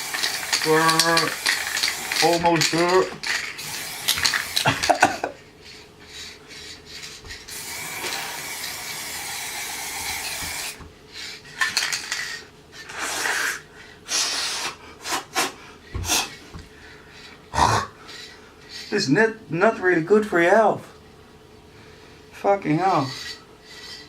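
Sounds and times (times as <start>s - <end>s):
spray can clinking: 0.0s - 5.2s, 7.5s - 10.8s
spray paint can hissing: 0.0s - 5.2s, 7.3s - 10.8s.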